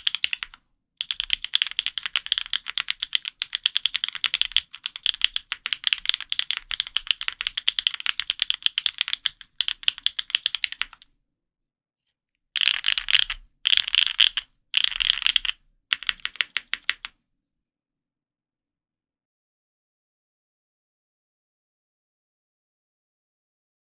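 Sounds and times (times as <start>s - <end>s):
mechanical keyboard keystrokes: 0.0s - 11.0s, 12.6s - 17.1s.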